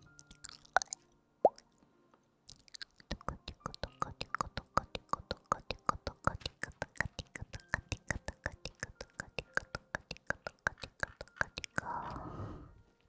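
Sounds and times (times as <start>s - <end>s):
clicks and pops near microphone: 2.5s - 11.9s.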